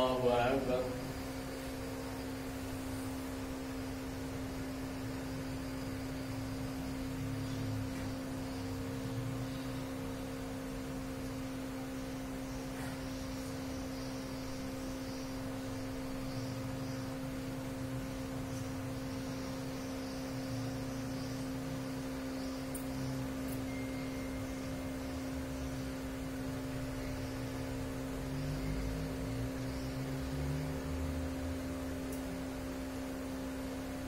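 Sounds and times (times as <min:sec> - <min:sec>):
electrical hum: 0:00.0 - 0:34.0.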